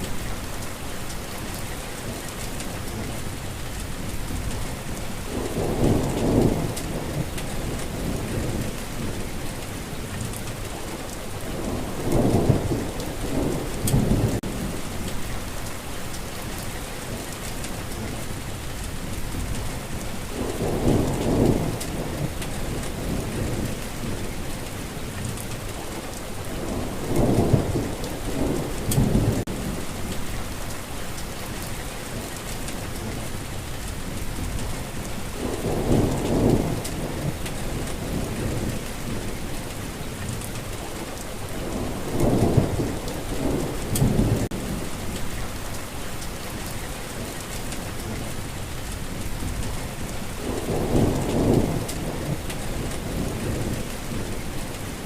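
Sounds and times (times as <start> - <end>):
steady rainfall: 0.0 - 55.0
low rolls of thunder: 4.1 - 15.4, 19.2 - 30.7, 34.1 - 45.7, 47.3 - 55.0.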